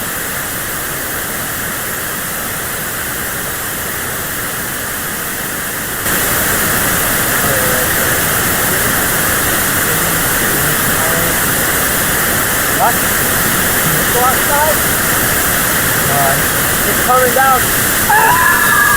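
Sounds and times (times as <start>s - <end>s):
radio static hiss: 4.3s - 18.9s.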